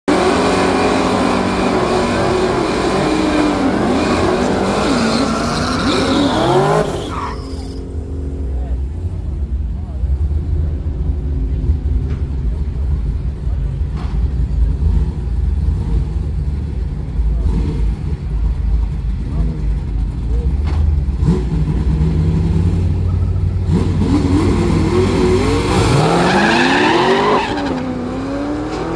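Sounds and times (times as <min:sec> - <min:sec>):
car engine revving: 0:00.1 - 0:28.9
tyres squealing: 0:03.2 - 0:07.9.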